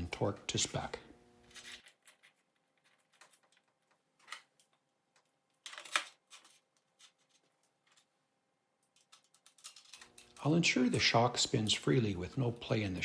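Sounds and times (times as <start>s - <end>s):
hand tools clicking on metal parts: 8.8s - 13.0s.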